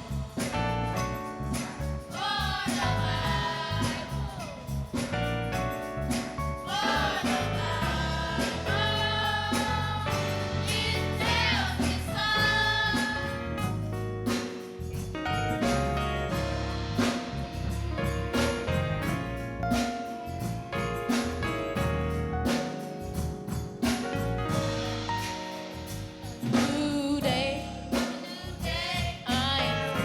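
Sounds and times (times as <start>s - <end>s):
gospel choir singing: 0.0s - 14.8s, 16.3s - 18.2s, 24.6s - 30.0s
bass and drums: 0.0s - 30.0s.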